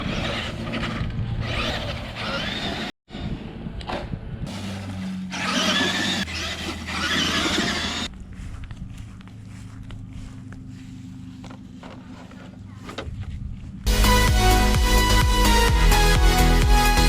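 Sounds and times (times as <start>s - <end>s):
rc truck motor whine: 0.0s - 2.9s, 5.0s - 8.1s
tyre noise: 4.5s - 13.9s.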